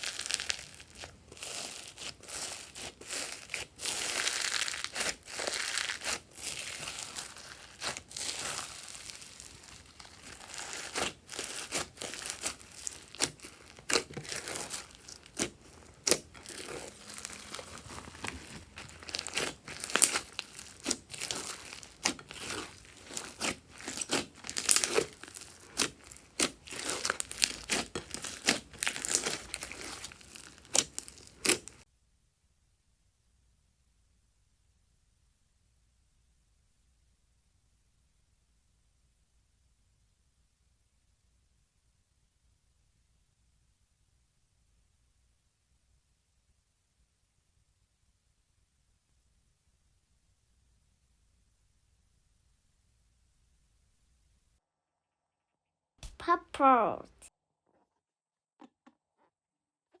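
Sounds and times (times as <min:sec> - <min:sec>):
crunchy slime crackling: 0:00.0 - 0:31.8.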